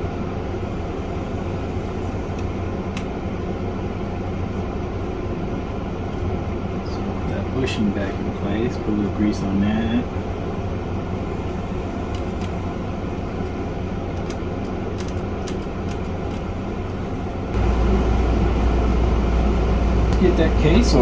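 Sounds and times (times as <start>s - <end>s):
fan-like room hum: 0.0s - 21.0s
low rumble: 17.6s - 21.0s.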